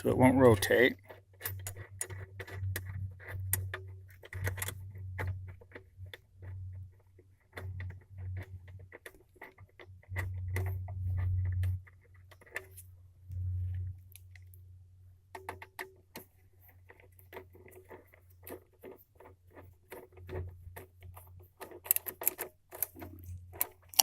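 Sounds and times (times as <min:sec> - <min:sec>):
metal hardware clicking and clinking: 0:21.6 - 0:24.0.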